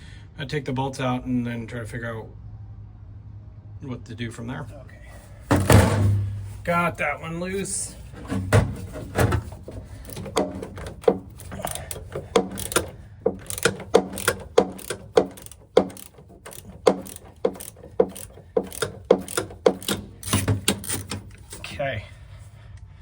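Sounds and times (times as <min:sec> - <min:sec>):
socket ratchet clicking: 0:09.4 - 0:21.6.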